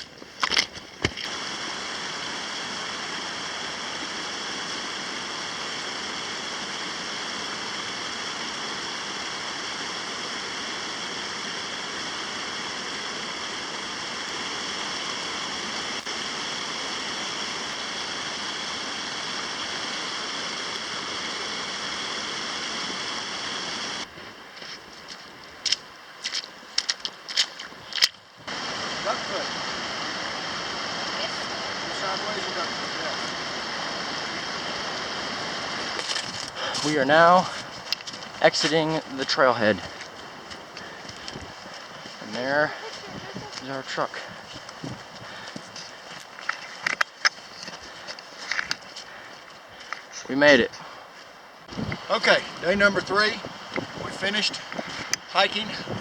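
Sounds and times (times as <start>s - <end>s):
stream water flowing: 0.0s - 56.0s
crunching footsteps: 24.5s - 29.4s, 35.8s - 50.2s.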